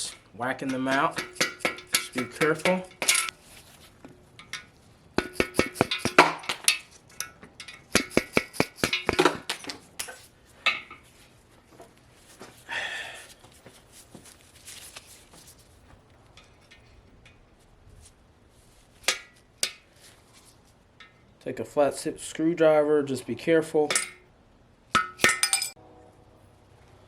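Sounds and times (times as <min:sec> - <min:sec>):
metal-on-metal strikes: 0:00.0 - 0:03.3, 0:05.2 - 0:06.8, 0:07.9 - 0:09.7
metal rattle: 0:00.0 - 0:03.4, 0:04.4 - 0:11.0, 0:25.0 - 0:25.8
metal clinks: 0:25.0 - 0:25.8.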